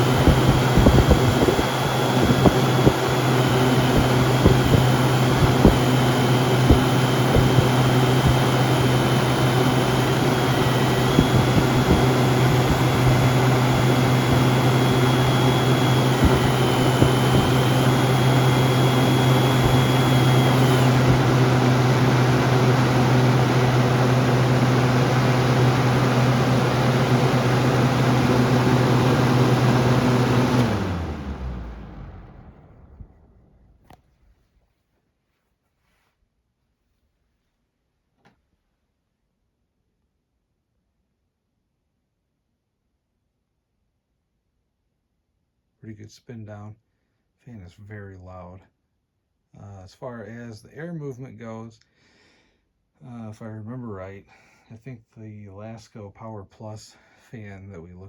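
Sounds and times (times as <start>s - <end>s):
box fan running loudly: 0.0s - 33.9s.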